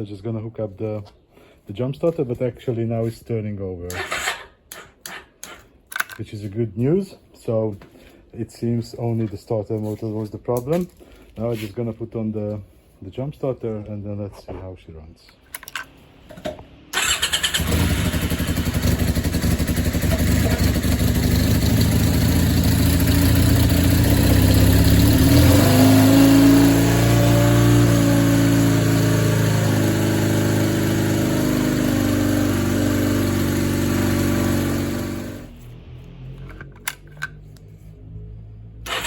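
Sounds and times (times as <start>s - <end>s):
motorcycle engine running: 17.0s - 35.6s
engine revving: 17.0s - 36.9s, 37.9s - 39.0s.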